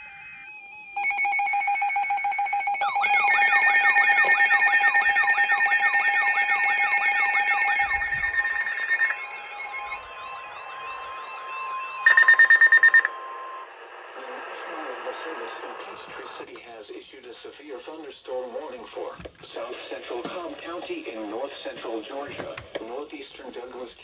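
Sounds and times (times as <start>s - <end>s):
steady electronic alarm tone: 0.0s - 13.7s.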